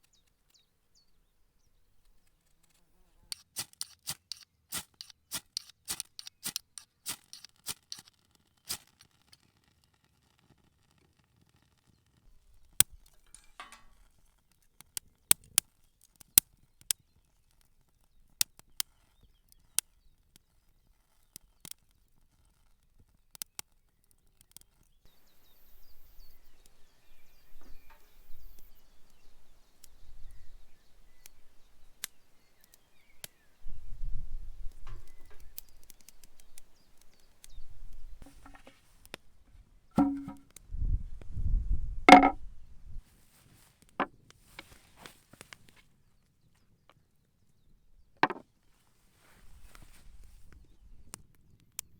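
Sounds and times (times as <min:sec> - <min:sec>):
sharp clicks and knocks: 0:03.3 - 0:08.1, 0:40.0 - 0:40.4, 0:42.1 - 0:42.4, 0:48.2 - 0:48.4
wind rumbling on microphone: 0:40.7 - 0:43.0.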